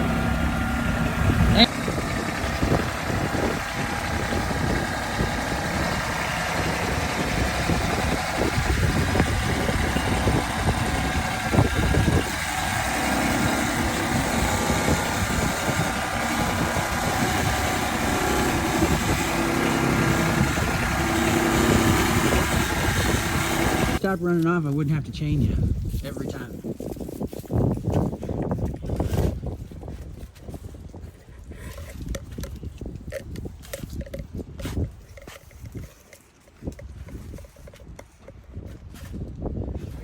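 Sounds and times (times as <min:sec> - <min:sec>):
engine running steadily: 0:00.0 - 0:24.2.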